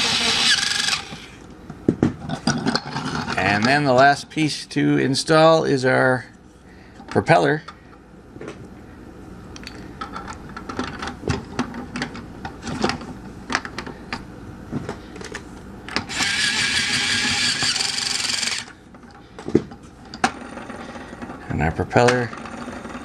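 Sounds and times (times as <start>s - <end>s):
toy drill running: 0.0s - 1.4s, 16.1s - 18.7s.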